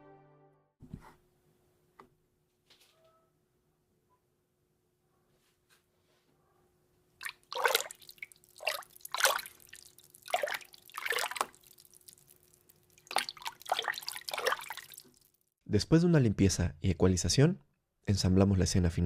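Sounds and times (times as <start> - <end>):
water splashing in a bucket: 7.2 - 15.4.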